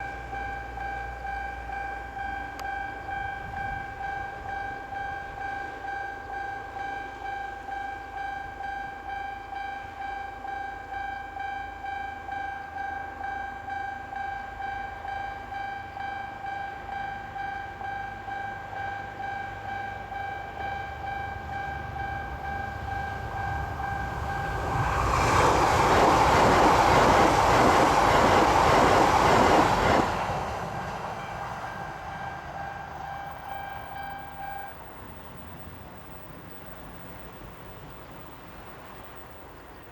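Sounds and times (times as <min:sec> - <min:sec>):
level crossing warning bell: 0:00.0 - 0:25.4, 0:26.0 - 0:37.6
train rushing past: 0:10.9 - 0:39.9.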